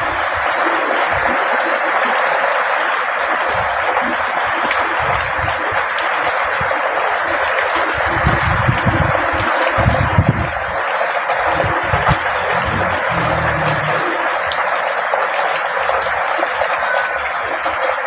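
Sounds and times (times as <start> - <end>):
heavy rain pouring: 8.0 - 17.4
wind gusting in low rumbles: 11.5 - 14.4.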